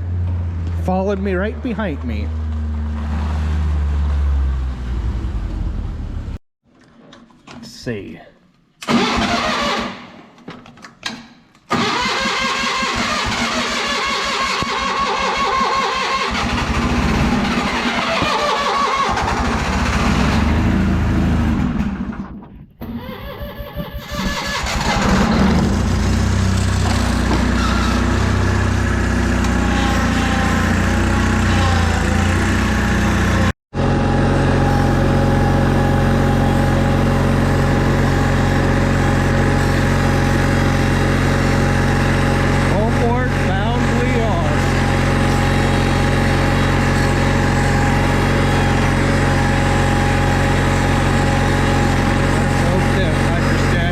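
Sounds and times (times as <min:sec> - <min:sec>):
tractor engine cranking: 0:08.8 - 0:10.0, 0:11.7 - 0:21.1, 0:22.8 - 0:33.4
tractor engine idling: 0:22.9 - 0:33.4.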